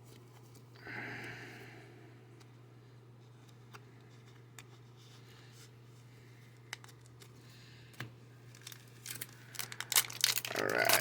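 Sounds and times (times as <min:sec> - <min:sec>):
low steady hum: 0:00.0 - 0:11.0
trading cards being handled: 0:03.2 - 0:11.0
foil wrapper crinkling: 0:08.5 - 0:11.0.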